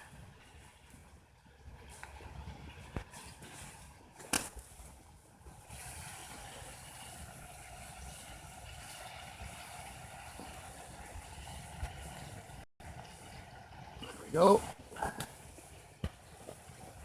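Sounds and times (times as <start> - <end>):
food sizzling in a pot: 5.6 - 14.6.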